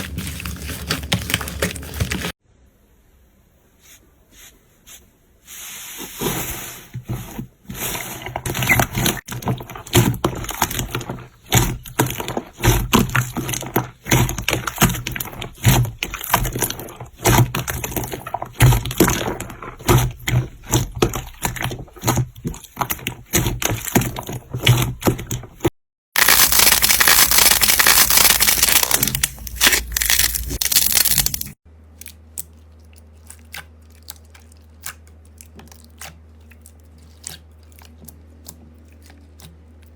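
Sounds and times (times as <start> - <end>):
loud crunching noise: 26.2 - 31.6.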